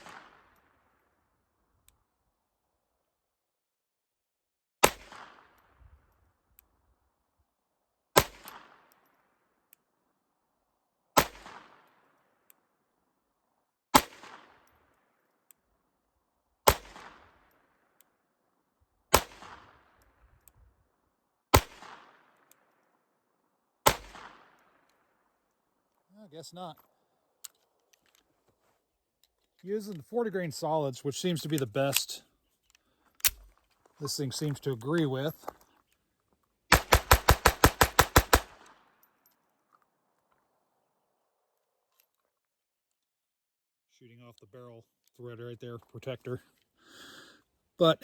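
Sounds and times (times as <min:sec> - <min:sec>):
pistol shots with echo: 0:00.0 - 0:00.6, 0:04.8 - 0:05.6, 0:11.2 - 0:11.9, 0:14.0 - 0:14.7, 0:16.7 - 0:17.4, 0:19.1 - 0:19.9, 0:21.5 - 0:22.2, 0:23.8 - 0:24.6, 0:36.7 - 0:38.9.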